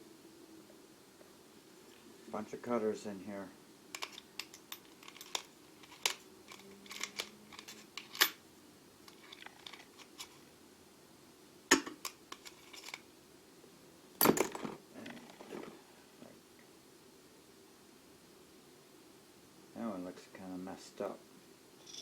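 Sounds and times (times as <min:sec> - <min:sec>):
metal cutter bits clinking: 0:04.0 - 0:08.4.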